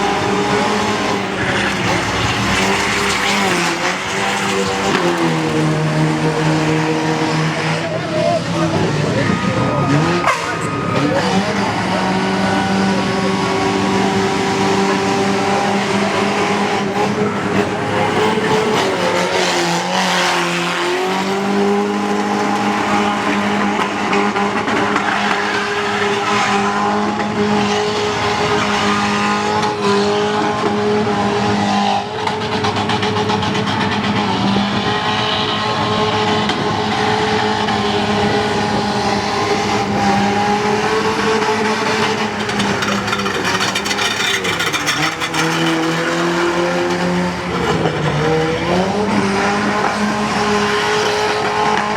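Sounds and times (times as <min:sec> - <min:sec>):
car engine revving high: 0:00.0 - 0:51.9
tyre squeal: 0:40.0 - 0:48.6.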